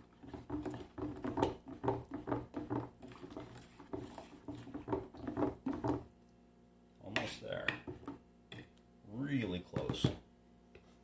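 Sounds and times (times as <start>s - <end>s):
plaster sloshing and scraping: 0.0s - 6.1s.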